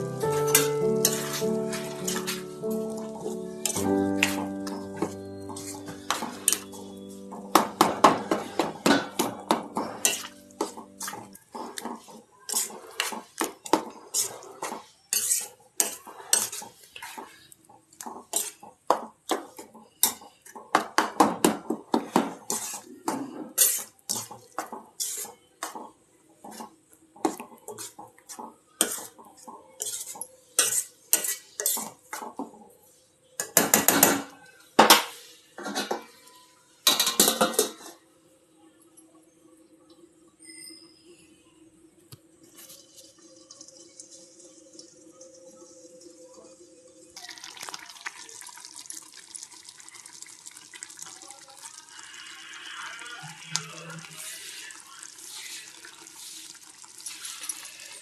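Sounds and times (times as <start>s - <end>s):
metal spoon clinking on pots: 0.1s - 17.4s, 18.0s - 21.3s, 27.3s - 32.4s, 33.4s - 36.1s, 36.8s - 38.0s.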